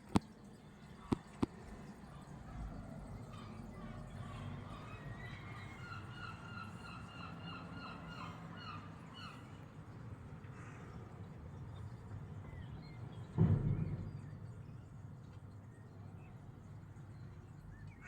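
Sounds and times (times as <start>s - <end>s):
seagull calling: 3.3s - 9.6s.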